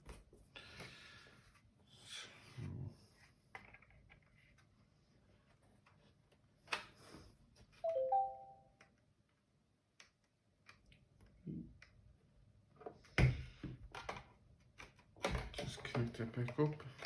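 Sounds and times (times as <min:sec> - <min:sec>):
two-note electronic chime: 0:07.9 - 0:08.6.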